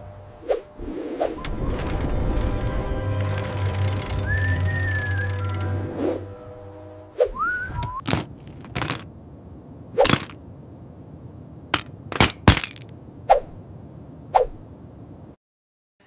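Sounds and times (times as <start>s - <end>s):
whistling tone: 3.1s - 8.0s
sharp cracks and knocks: 10.0s - 10.4s, 11.8s - 12.9s.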